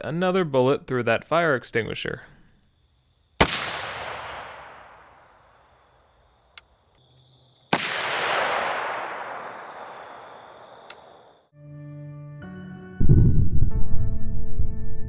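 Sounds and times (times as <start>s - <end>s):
rifle shot with rushing tail: 3.4s - 5.4s, 7.7s - 11.2s
small click: 6.6s - 7.0s, 10.8s - 11.1s.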